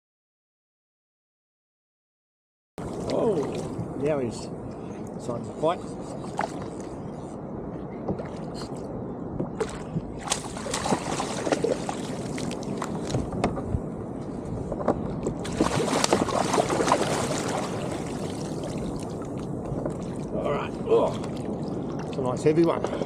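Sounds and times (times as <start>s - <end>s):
water splashing around kayak: 2.8s - 4.2s, 5.6s - 7.1s, 9.4s - 23.0s.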